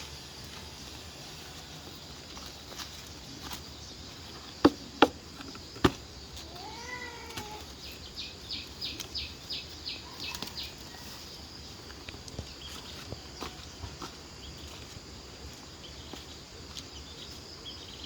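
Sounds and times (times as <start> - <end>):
meow-like animal call: 6.4 - 7.7.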